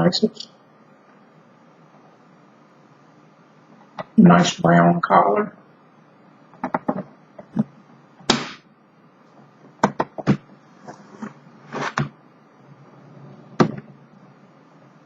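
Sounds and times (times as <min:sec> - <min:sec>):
hard case clicks and knocks: 0:06.6 - 0:07.1, 0:09.8 - 0:10.4.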